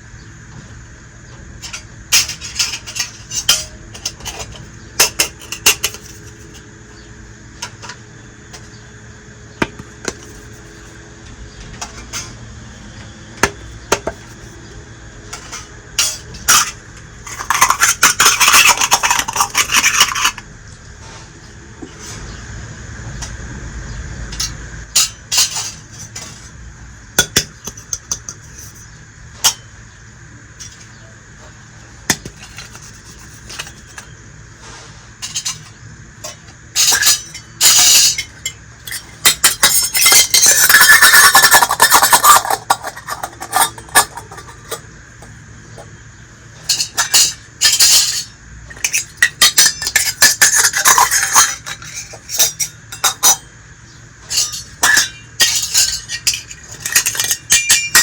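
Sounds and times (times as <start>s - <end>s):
toy kitchen pieces clattering: 1.6s - 6.6s, 15.3s - 20.5s, 32.1s - 34.1s, 35.2s - 46.0s, 46.6s - 53.5s, 54.2s - 58.0s.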